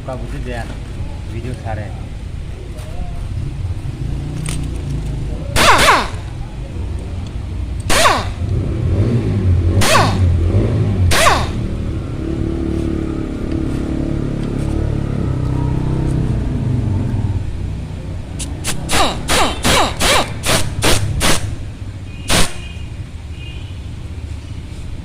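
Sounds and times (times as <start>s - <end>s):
sharp downward-sweeping bursts: 18.4s - 21.6s.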